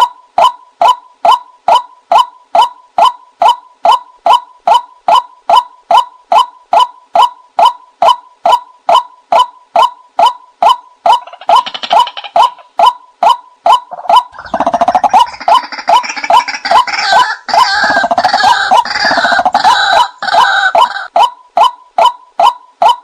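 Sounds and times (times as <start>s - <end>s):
waterhen call: 9.4s - 23.0s
chorus of bird calls: 10.2s - 12.9s, 13.7s - 21.2s.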